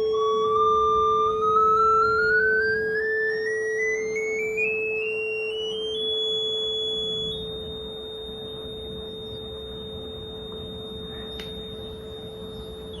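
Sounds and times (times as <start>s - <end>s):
high sine tone stepping up: 0.0s - 13.0s
steady lower sine tone: 0.0s - 13.0s
brief click: 11.3s - 11.6s.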